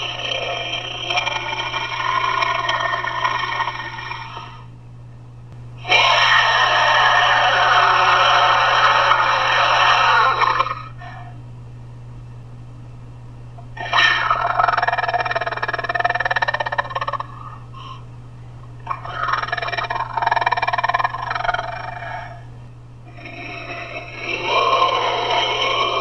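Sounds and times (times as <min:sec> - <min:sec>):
steady low hum: 0:00.0 - 0:26.0
altered voice roaring: 0:05.8 - 0:11.0, 0:23.6 - 0:26.0.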